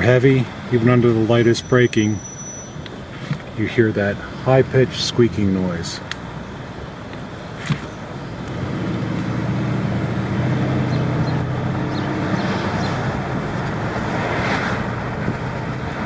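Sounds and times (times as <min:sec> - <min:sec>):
car engine hum: 0:00.0 - 0:16.0
road noise: 0:00.0 - 0:16.0.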